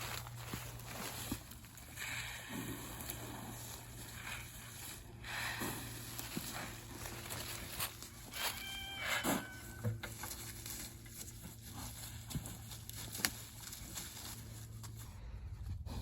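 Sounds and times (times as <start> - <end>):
farm animal calling: 5.3 - 12.2.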